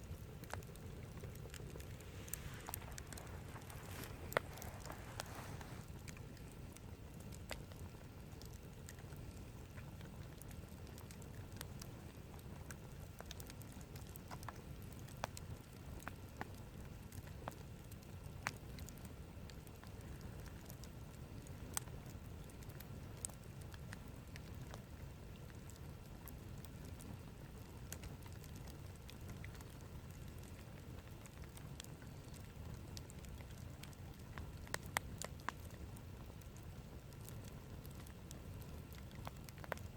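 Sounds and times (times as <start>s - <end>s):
campfire crackling: 0.0s - 39.9s
low steady rumble: 0.0s - 39.9s
sharp pops and snaps: 0.2s - 6.4s, 27.8s - 39.9s.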